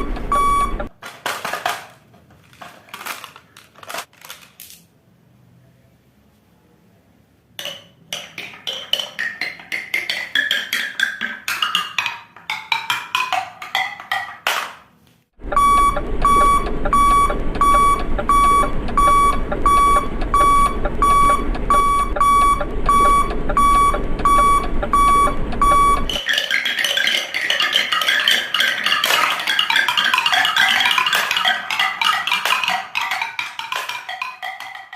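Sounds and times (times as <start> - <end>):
steady beeping: 0.0 - 0.9, 15.4 - 26.2
marbles clicking down plastic track: 7.6 - 14.5, 26.1 - 34.9
marbles clattering rush: 26.1 - 34.9.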